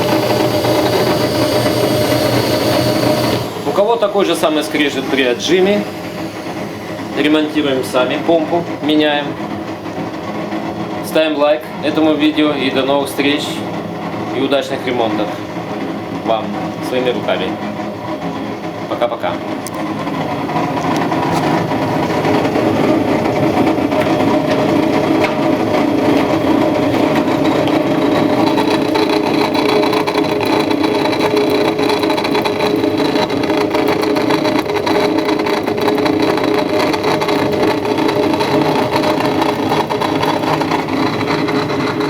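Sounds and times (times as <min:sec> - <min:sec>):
high whine: 0:00.0 - 0:09.6
drain pump grinding: 0:00.0 - 0:42.0
washing machine spinning: 0:00.0 - 0:42.0.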